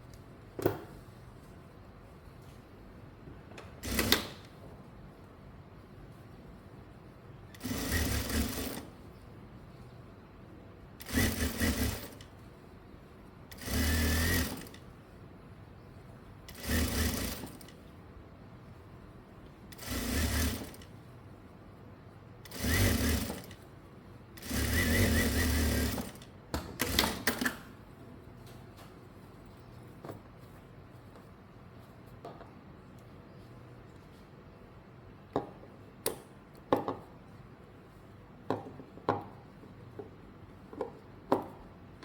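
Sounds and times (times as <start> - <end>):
sewing machine stitching: 3.8 - 4.5, 7.6 - 8.9, 11.0 - 12.3, 13.5 - 14.8, 16.5 - 17.8, 19.7 - 20.9, 22.4 - 23.6, 24.4 - 27.5.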